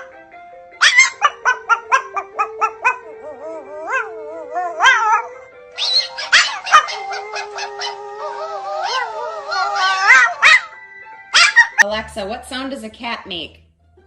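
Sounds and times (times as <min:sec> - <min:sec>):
dog howling: 0:00.8 - 0:10.8
music with long held notes: 0:02.1 - 0:12.9.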